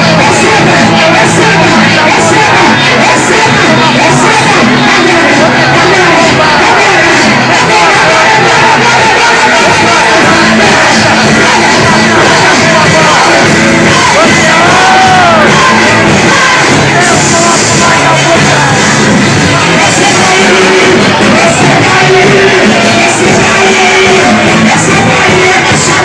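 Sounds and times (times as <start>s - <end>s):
congregation shouting and singing: 0.0s - 26.0s
loud worship music: 0.0s - 26.0s.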